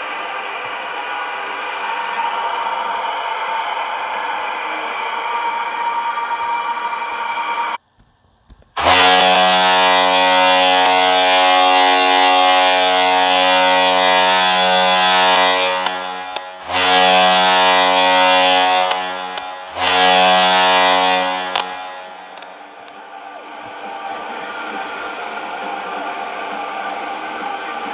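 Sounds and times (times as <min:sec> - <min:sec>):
arena goal horn blasts: 0:08.8 - 0:27.9.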